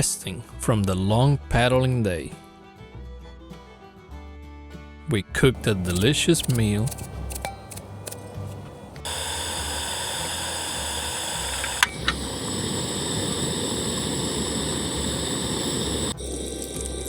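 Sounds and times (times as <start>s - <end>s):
soft background music: 0.0s - 17.0s
stove hissing: 5.6s - 17.0s.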